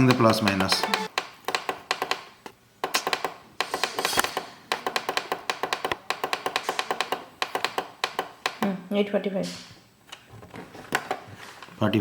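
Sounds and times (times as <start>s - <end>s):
digital clock button clicks: 0.0s - 1.1s.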